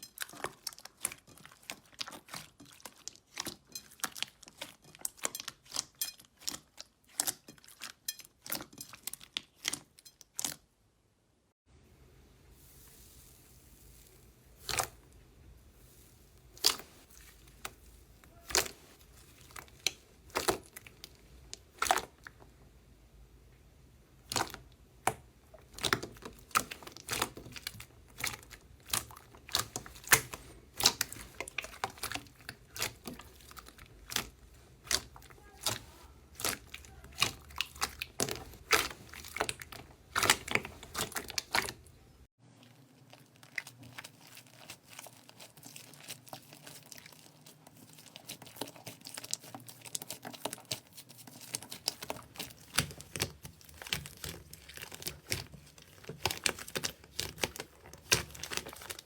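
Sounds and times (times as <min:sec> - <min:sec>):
slime crackling and popping: 0:12.6 - 0:22.4, 0:24.2 - 0:41.9, 0:43.1 - 0:59.0.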